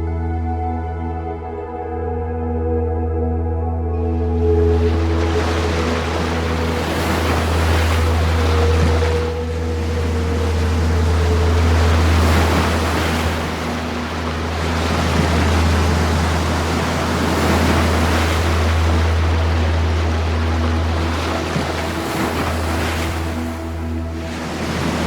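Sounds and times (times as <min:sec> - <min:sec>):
low drone: 0:00.0 - 0:25.0
ocean waves washing: 0:04.3 - 0:25.0.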